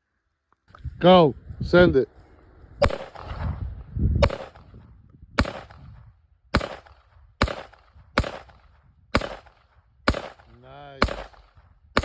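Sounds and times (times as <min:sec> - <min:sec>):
gunshots with echo: 0:02.8 - 0:03.4, 0:04.2 - 0:04.7, 0:05.4 - 0:05.9, 0:06.5 - 0:12.0.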